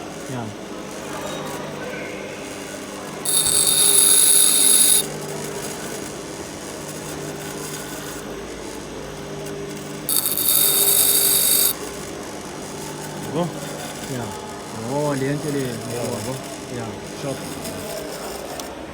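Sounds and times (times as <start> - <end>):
grinder motor hum: 2.5 - 6.0, 9.4 - 18.9
drill bit grinding on wheel: 3.2 - 5.4, 9.8 - 18.7.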